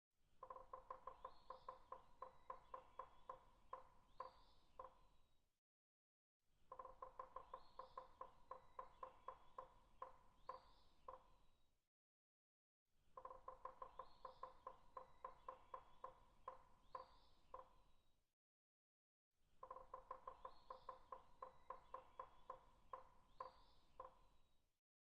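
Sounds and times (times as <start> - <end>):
woodpecker knocking on tree: 0.4 - 5.0, 6.7 - 11.3, 13.2 - 17.8, 19.6 - 24.3.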